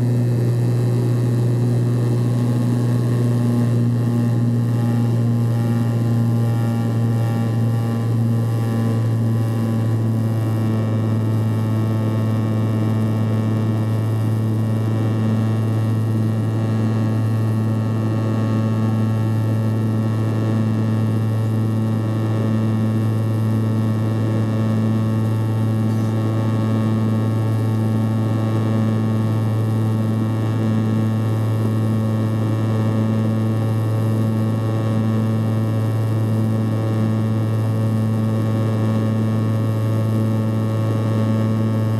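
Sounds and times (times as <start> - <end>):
propeller drone: 0.0 - 41.9.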